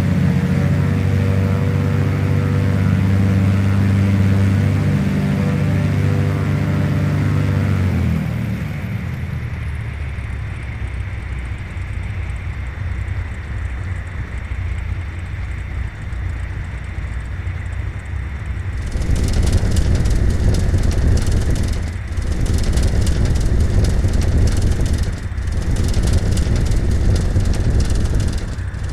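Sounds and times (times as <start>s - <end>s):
loud rough engine noise: 0.0s - 10.0s, 18.6s - 28.9s
aircraft piston engines humming: 18.7s - 28.9s.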